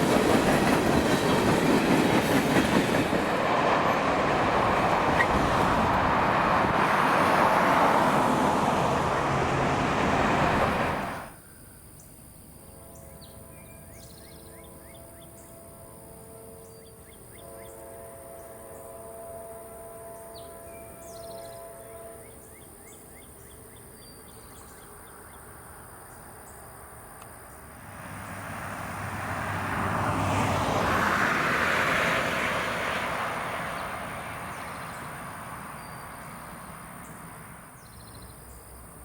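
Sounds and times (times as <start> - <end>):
vehicle passing by: 3.1 - 11.3, 27.8 - 37.6.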